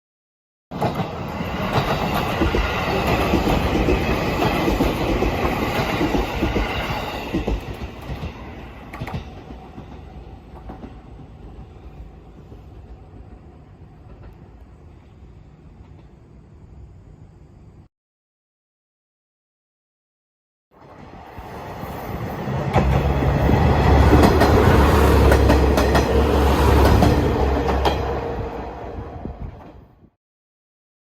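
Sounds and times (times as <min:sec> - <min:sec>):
train wheels clacking: 0:00.8 - 0:11.0, 0:22.3 - 0:28.2.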